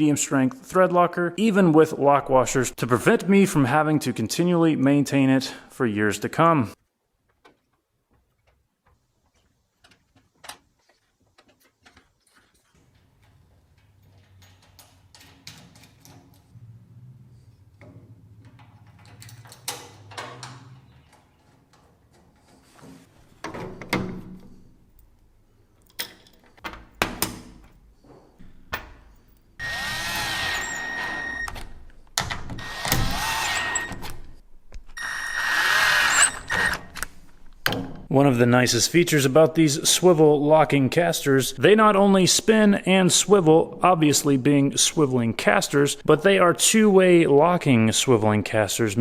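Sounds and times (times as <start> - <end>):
cordless drill running: 29.6 - 31.5, 32.6 - 33.9, 35.0 - 36.8.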